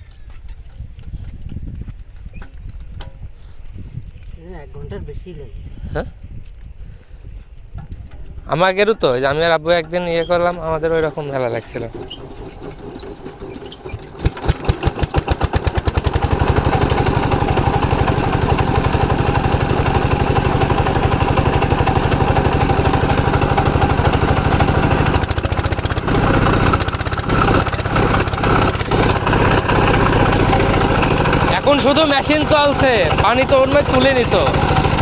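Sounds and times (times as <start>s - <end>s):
diesel pump engine chugging: 9.0s - 35.0s.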